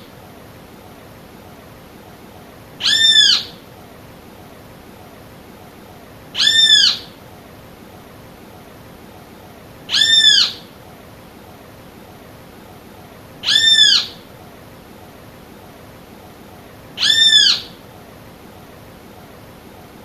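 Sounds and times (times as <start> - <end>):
bird calling: 2.8 - 3.6, 6.3 - 7.2, 9.9 - 10.8, 13.4 - 14.3, 17.0 - 17.8.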